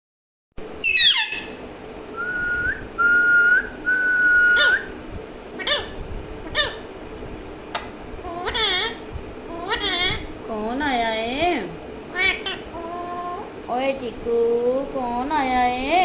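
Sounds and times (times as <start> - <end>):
parrot chirps: 0.8 - 1.6, 4.4 - 4.9, 5.6 - 6.8, 7.7 - 9.0, 9.6 - 10.2, 12.1 - 13.3
parrot whistling: 0.8 - 1.6, 2.2 - 4.9, 5.6 - 6.8.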